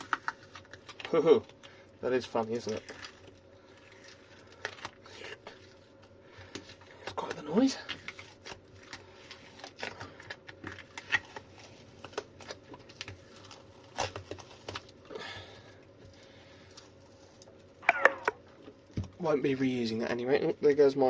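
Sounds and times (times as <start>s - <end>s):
rubbery material peeling with crackles: 0.0s - 15.1s.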